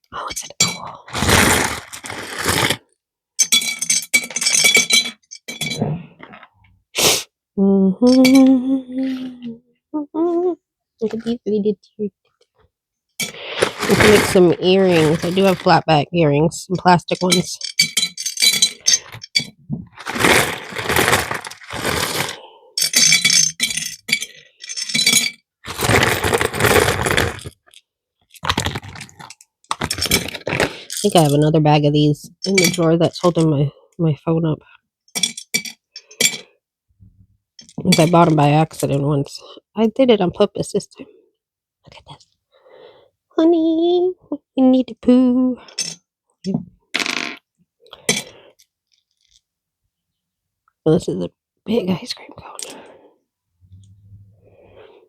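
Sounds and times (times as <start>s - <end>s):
charms and beads clinking: 3.4s - 5.8s, 8.0s - 8.6s, 17.1s - 27.6s
person humming: 7.6s - 11.2s
jewellery charms clinking: 17.2s - 19.5s.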